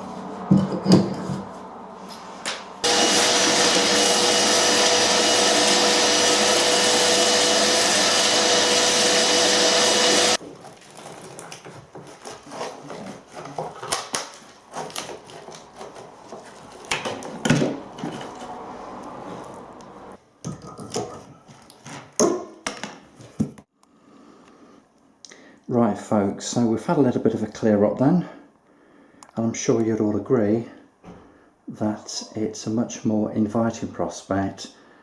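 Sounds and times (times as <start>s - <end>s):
vacuum cleaner whining: 2.8s - 10.4s.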